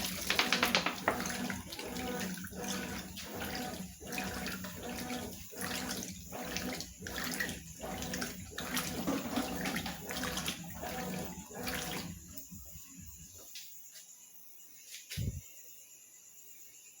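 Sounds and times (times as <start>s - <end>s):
rhythmic water sloshing: 0.0s - 13.4s
washing machine motor hum: 0.0s - 13.6s, 15.1s - 15.4s.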